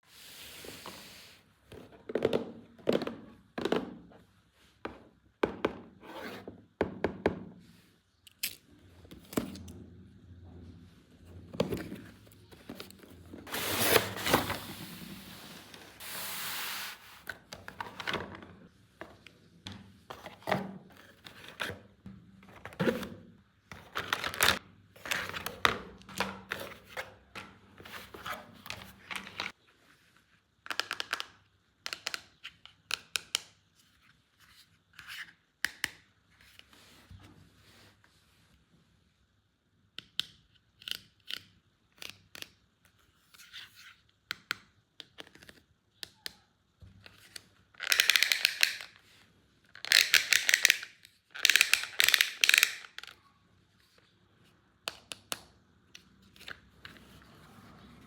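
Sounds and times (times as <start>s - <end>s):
plastic toy pieces clicking and tapping: 30.7s - 33.5s, 47.8s - 49.0s, 49.8s - 53.2s.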